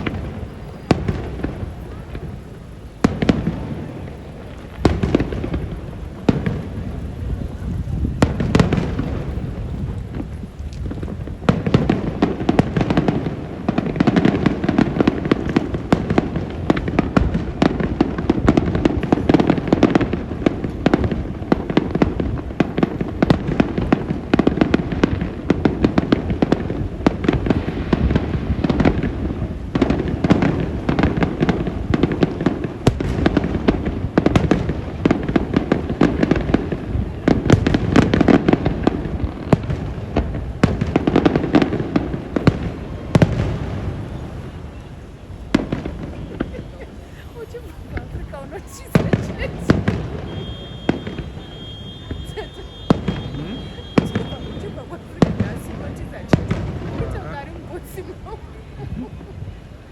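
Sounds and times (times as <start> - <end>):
rolling rumble of booms: 0.0 - 59.6
fireworks bangs and pops: 0.0 - 59.9.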